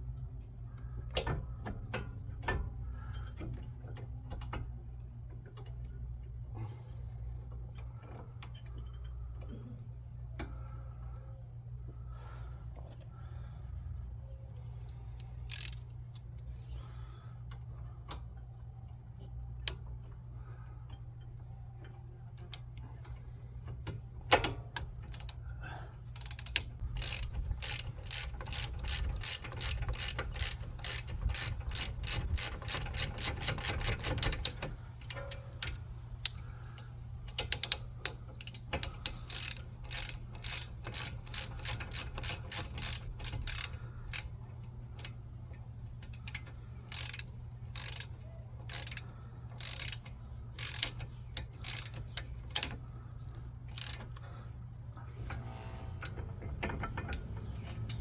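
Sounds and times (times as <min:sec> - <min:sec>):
steady low hum: 0:00.0 - 0:58.0
ratchet wrench clicking: 0:14.9 - 0:16.3, 0:24.2 - 0:25.4, 0:26.1 - 0:36.5, 0:37.2 - 0:54.3, 0:56.0 - 0:58.0.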